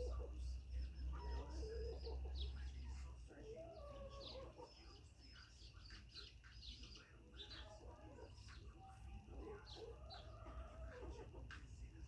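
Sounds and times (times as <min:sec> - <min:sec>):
chickens clucking: 0:03.3 - 0:05.0, 0:07.4 - 0:11.7.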